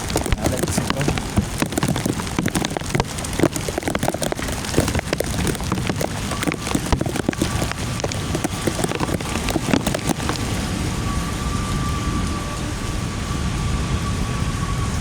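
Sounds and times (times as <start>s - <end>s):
raindrops striking a surface: 0.0s - 10.7s
heavy rain pouring: 0.0s - 11.3s.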